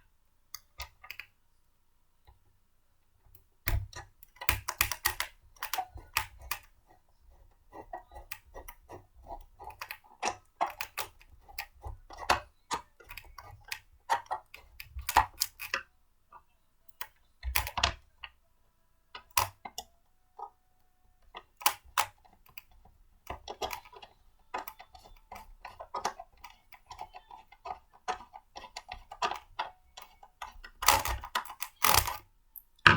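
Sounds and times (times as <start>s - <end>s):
blender parts clicking: 23.4s - 32.9s.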